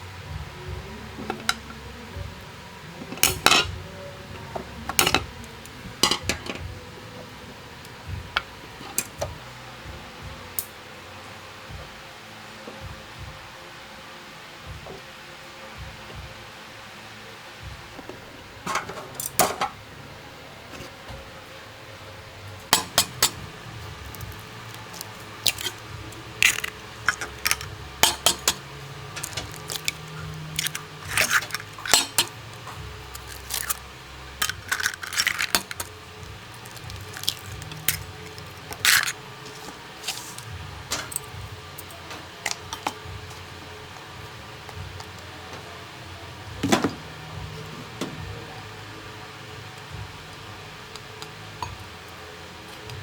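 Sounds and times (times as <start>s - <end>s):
dishes and utensils clinking: 3.1s - 3.8s, 6.0s - 6.7s, 22.7s - 33.8s, 34.4s - 43.4s.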